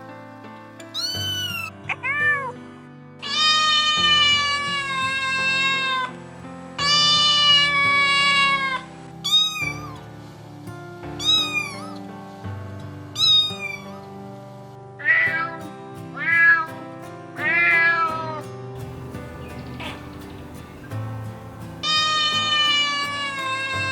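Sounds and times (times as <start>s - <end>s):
soft background music: 0.0s - 23.9s
cat meowing: 6.9s - 10.0s, 11.2s - 11.9s, 13.2s - 13.8s, 16.2s - 16.7s, 18.8s - 23.9s.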